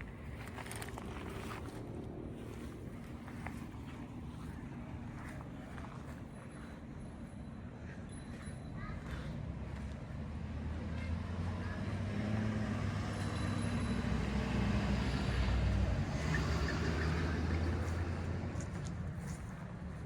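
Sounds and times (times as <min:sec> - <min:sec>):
vehicle engine driving past: 0:10.1 - 0:19.3.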